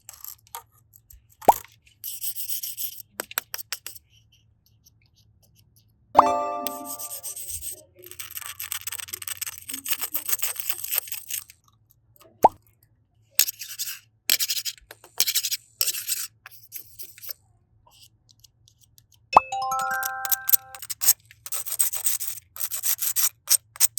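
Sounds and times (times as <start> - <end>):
rising plop sound effect: 6.2 - 7.4, 19.4 - 20.8.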